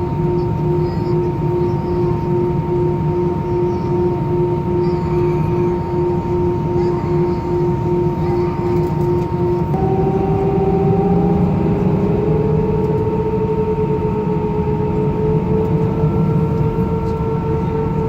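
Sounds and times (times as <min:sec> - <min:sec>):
higher engine tone: 0:00.0 - 0:18.0
jet engine whine: 0:00.0 - 0:18.0
low engine rumble: 0:00.0 - 0:18.0.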